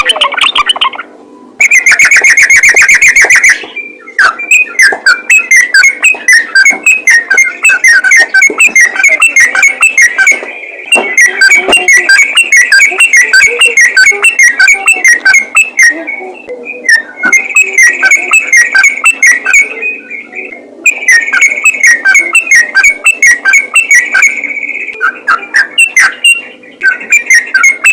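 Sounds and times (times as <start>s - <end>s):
bird singing whistled notes: 1.6s - 27.9s.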